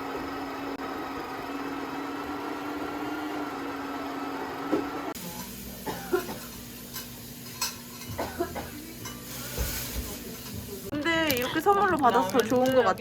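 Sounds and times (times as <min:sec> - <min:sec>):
cups and cutlery clinking: 0:05.3 - 0:10.7.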